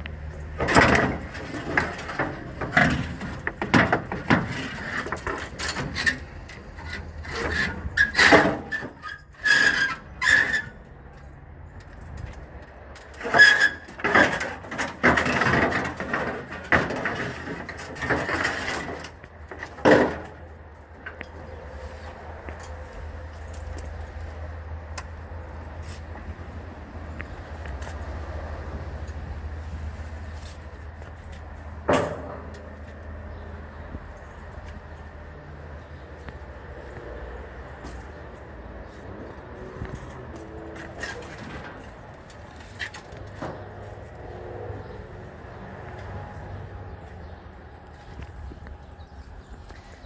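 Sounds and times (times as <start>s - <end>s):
scrap metal clanking and scraping: 0.0s - 24.4s, 29.2s - 35.0s, 37.8s - 45.0s
low vehicle hum: 0.0s - 50.0s.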